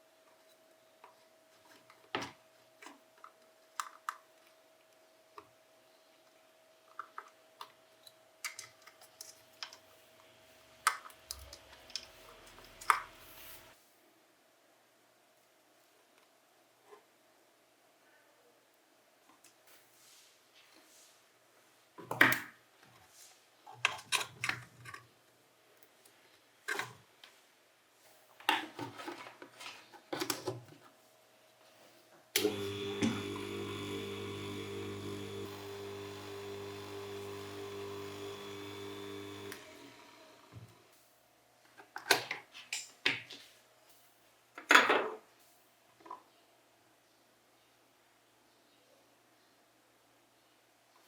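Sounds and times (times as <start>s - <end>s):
small electric motor humming: 32.4s - 40.8s.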